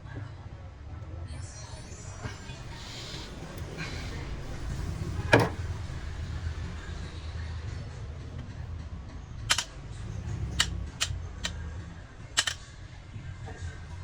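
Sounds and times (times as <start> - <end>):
low steady hum: 0.9 - 14.0
sharp clicks: 9.5 - 9.8, 12.4 - 12.6.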